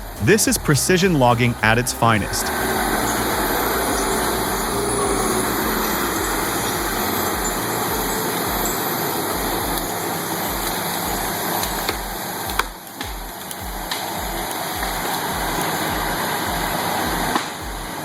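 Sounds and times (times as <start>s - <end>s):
diesel engine rumbling under load: 0.0s - 8.8s.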